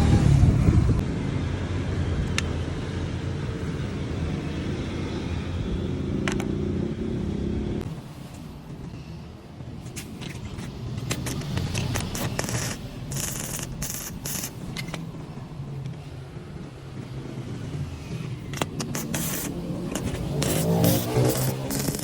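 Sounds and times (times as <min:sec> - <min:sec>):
steady low rumble: 0:00.0 - 0:22.0
scraping on metal parts: 0:09.8 - 0:15.1, 0:18.5 - 0:22.0.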